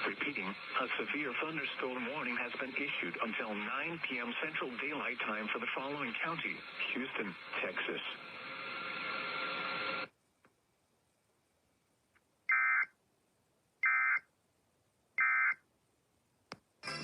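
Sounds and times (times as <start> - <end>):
radio hiss: 0.0 - 10.1.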